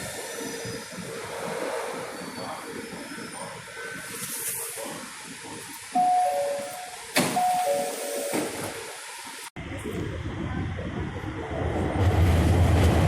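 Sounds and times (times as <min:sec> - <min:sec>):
platform noise: 0:05.8 - 0:11.0
steady low rumble: 0:09.5 - 0:13.0.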